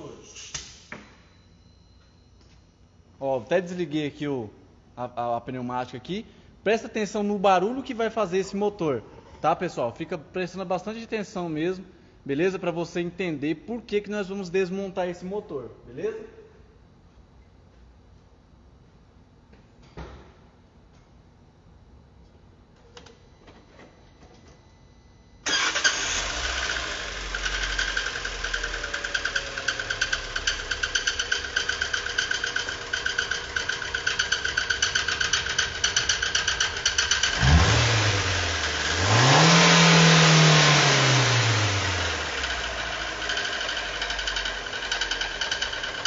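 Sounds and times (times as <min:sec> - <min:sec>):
car engine revving: 0:25.6 - 0:46.0
car engine idling with tapping knock: 0:27.2 - 0:39.4, 0:42.1 - 0:46.0.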